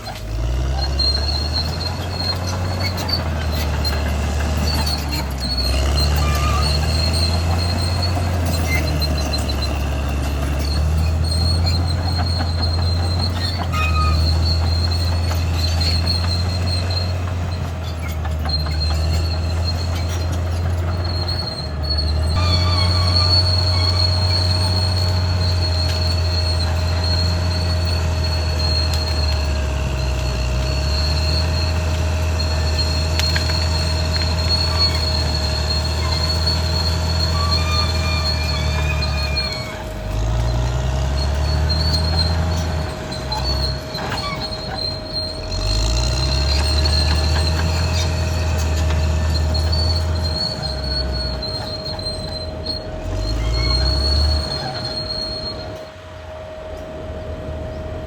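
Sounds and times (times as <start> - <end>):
bulldozer diesel engine droning: 0.0 - 58.0
steel tracks squealing: 0.0 - 58.0.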